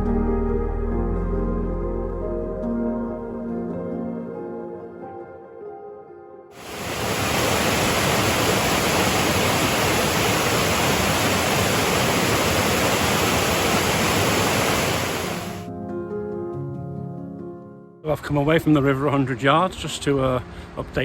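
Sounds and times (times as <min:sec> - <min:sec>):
waterfall rushing: 0:06.6 - 0:15.7.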